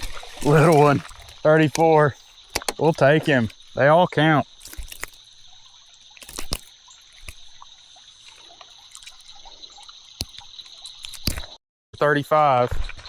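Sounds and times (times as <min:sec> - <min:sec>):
sharp clicks: 0:00.0 - 0:03.8, 0:04.4 - 0:09.5, 0:10.2 - 0:11.5
creek water trickling and splashing: 0:00.0 - 0:11.6
high insect trill: 0:00.0 - 0:13.0.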